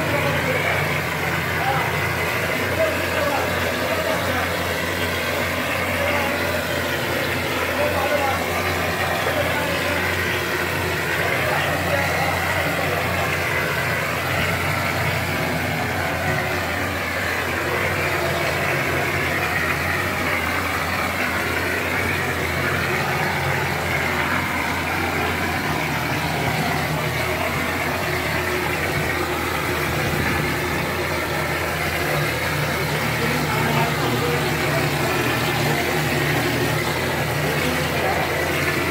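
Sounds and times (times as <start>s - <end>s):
plaster spraying machine hum: 0.0s - 38.9s.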